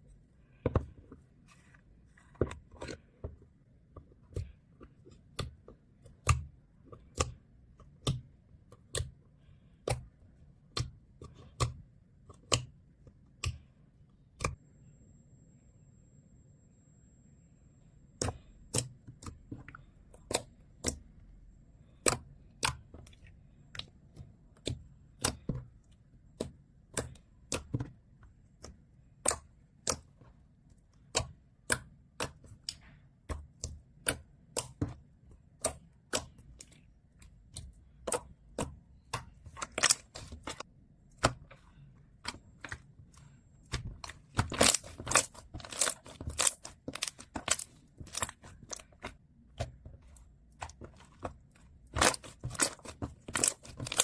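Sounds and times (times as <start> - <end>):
slime clicking and popping: 43.7 - 54.0.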